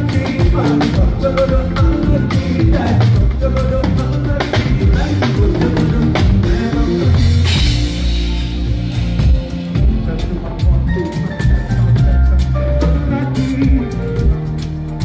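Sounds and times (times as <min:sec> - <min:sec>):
bass drum and snare strokes: 0:00.0 - 0:15.0
bass line: 0:00.0 - 0:15.0
live band playing: 0:00.0 - 0:15.0.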